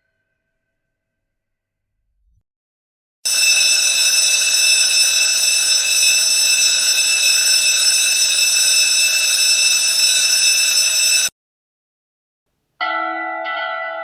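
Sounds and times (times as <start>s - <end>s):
electric school bell ringing: 3.2s - 11.3s, 12.8s - 14.0s.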